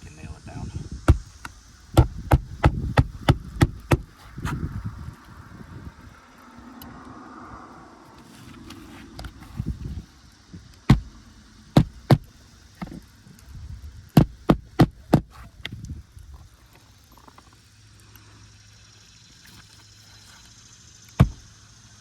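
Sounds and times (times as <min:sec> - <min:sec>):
hammer striking roofing nails: 0:01.1 - 0:04.1, 0:10.9 - 0:13.0, 0:14.2 - 0:15.3, 0:21.2 - 0:21.4.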